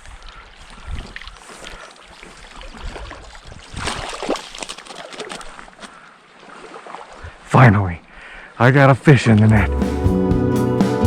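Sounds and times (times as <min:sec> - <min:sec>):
fish thrashing and splashing: 0:00.0 - 0:07.3
flowing river water: 0:00.0 - 0:10.1.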